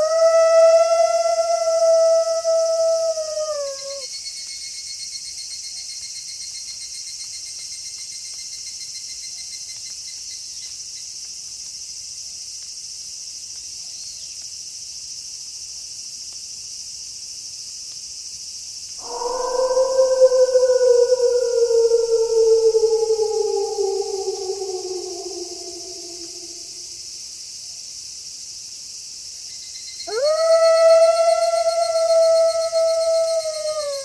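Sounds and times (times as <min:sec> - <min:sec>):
wolf howling: 0:00.0 - 0:04.1, 0:19.0 - 0:27.0, 0:30.1 - 0:34.0
insects chorus at night: 0:00.0 - 0:14.6, 0:19.0 - 0:34.0
cricket trilling: 0:19.0 - 0:27.0, 0:30.0 - 0:34.0.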